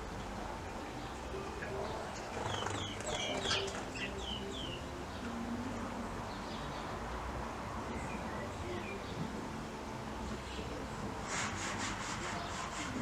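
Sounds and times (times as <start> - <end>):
small birds chirping: 0.6 - 5.4.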